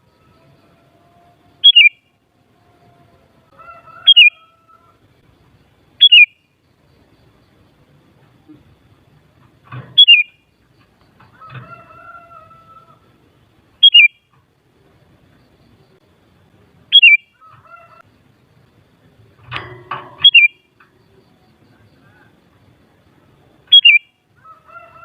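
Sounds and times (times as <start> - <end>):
low crowing bird calls: 0.0 - 16.0, 16.9 - 25.0
bird two-note calls: 13.8 - 14.1, 16.9 - 17.2, 20.2 - 20.6.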